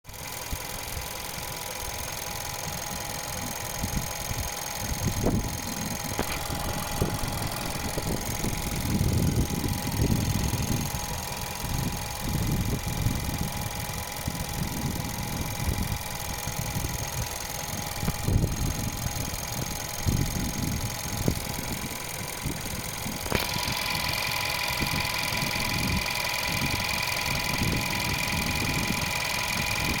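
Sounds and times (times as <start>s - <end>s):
car engine idling: 0.1s - 30.0s
high steady whine: 0.1s - 30.0s
ticking rattle: 0.2s - 30.0s.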